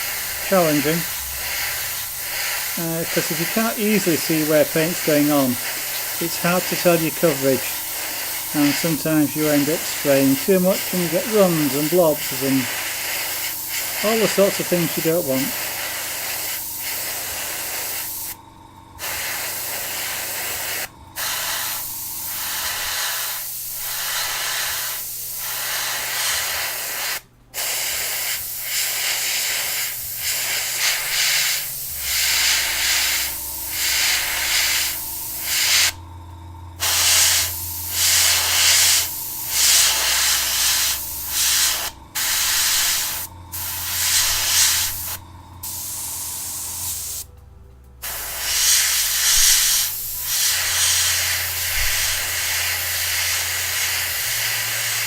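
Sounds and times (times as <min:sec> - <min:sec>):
airbrush spraying hissing bursts: 0:00.0 - 0:18.4, 0:19.0 - 0:36.0, 0:36.8 - 0:47.3, 0:48.0 - 0:55.0
low steady hum: 0:30.4 - 0:53.1.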